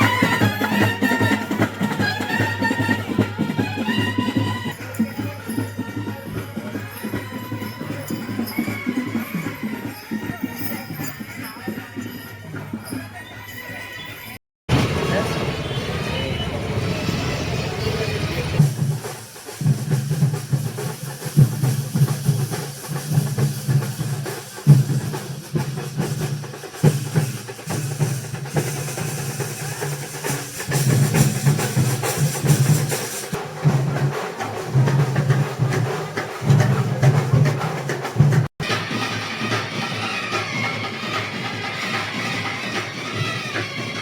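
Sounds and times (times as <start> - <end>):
band music: 0.0 - 11.4, 38.6 - 44.0.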